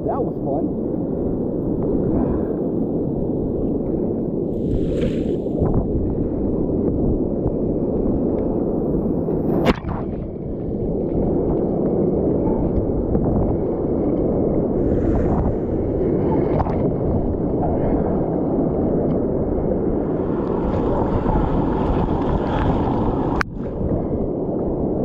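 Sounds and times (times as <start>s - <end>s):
wind on microphone: 0.0s - 25.0s
surf rushing: 4.4s - 6.3s, 9.0s - 25.0s.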